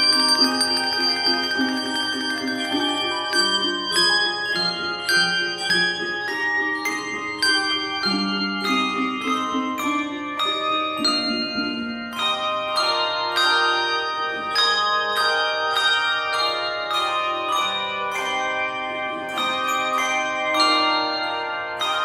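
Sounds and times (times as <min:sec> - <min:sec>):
handbell choir playing: 0:00.0 - 0:22.0.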